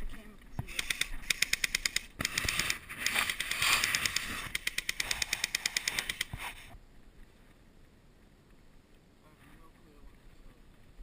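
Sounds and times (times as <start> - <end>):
rustling: 0.0 - 7.6.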